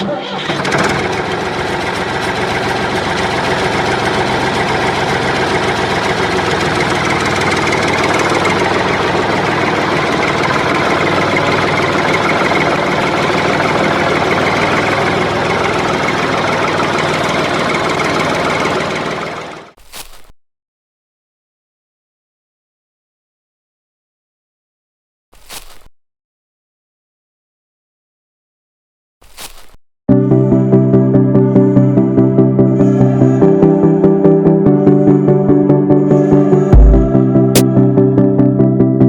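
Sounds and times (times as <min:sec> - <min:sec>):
engine running with rapid knocking: 0:00.0 - 0:19.8, 0:36.2 - 0:37.6.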